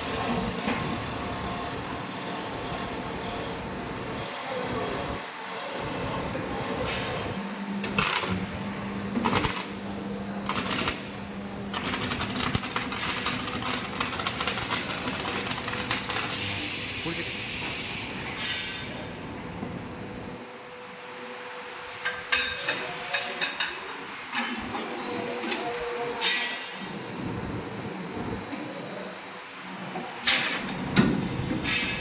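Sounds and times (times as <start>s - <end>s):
rapid crackle of clicks: 11.7s - 16.3s
short air hisses: 16.3s - 18.9s, 31.2s - 32.0s.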